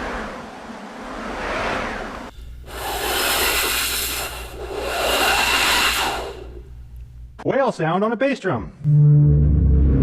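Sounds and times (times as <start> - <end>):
wind machine whooshes: 0.0 - 6.6
hissing wind: 0.0 - 6.7.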